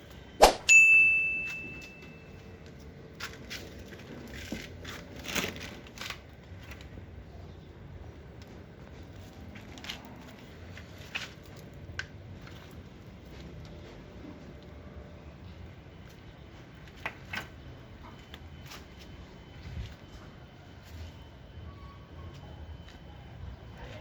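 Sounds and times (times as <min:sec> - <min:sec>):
struck metal ringing: 0:00.4 - 0:02.2.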